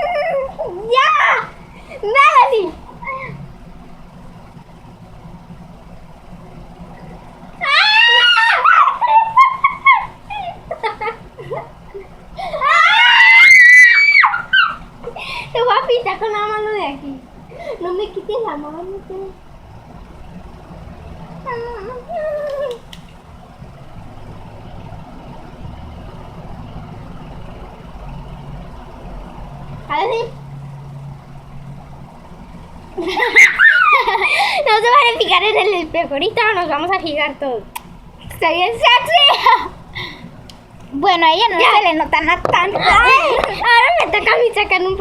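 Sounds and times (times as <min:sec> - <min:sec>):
low room hum: 0:00.0 - 0:45.0
girl screaming: 0:07.6 - 0:10.0, 0:12.5 - 0:14.8, 0:33.2 - 0:34.2
girl squealing: 0:07.6 - 0:10.6, 0:12.4 - 0:14.8, 0:33.2 - 0:34.3
child whimpering: 0:21.5 - 0:22.8.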